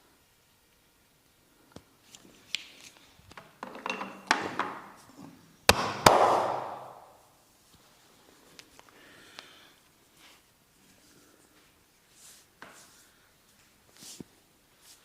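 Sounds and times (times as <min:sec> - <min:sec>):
hands tapping and slapping body: 0:05.7 - 0:06.8.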